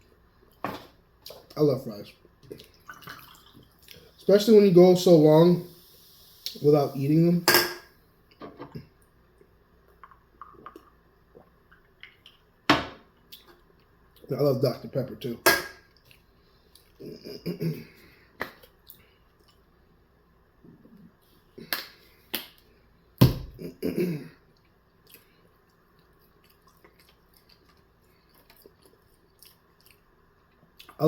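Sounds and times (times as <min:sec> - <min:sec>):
soft chewing: 0:16.0 - 0:17.1, 0:18.2 - 0:20.0, 0:24.4 - 0:31.0.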